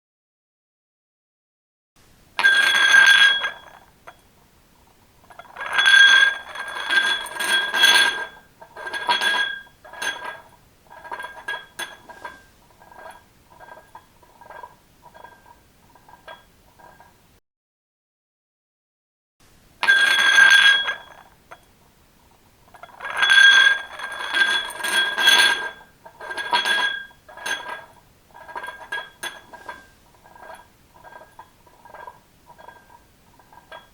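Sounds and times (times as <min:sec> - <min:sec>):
glass rolling on tiled floor: 0:02.4 - 0:04.2, 0:05.2 - 0:17.2, 0:19.8 - 0:21.6, 0:22.6 - 0:33.9.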